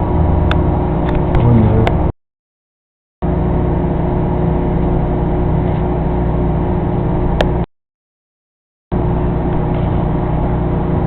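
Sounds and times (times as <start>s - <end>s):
microwave oven humming: 3.3s - 7.6s, 9.0s - 11.0s.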